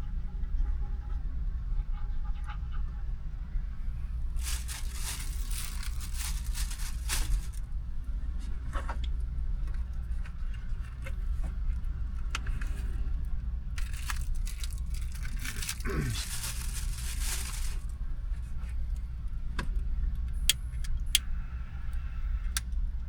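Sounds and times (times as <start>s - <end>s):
steady low hum: 3.2s - 23.0s
packaging crinkling: 3.8s - 7.8s, 13.8s - 17.9s.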